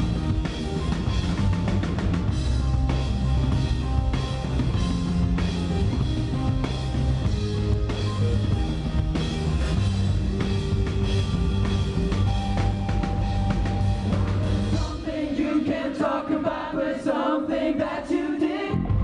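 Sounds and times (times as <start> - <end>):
rock band playing live: 0.0 - 15.2
drum kit: 0.0 - 16.6.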